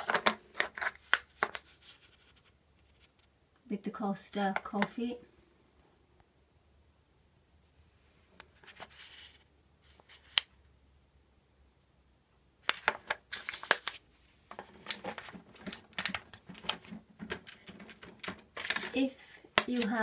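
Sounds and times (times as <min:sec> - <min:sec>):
packaging crinkling: 0:00.0 - 0:02.2, 0:12.7 - 0:20.0.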